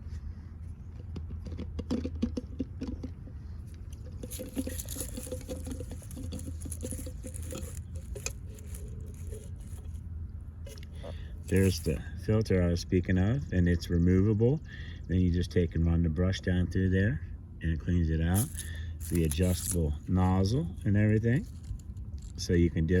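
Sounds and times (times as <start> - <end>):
steady low hum: 0.0 - 23.0
plastic parts clicking and rustling: 3.9 - 10.0, 10.7 - 12.0, 18.4 - 20.4, 21.4 - 22.4.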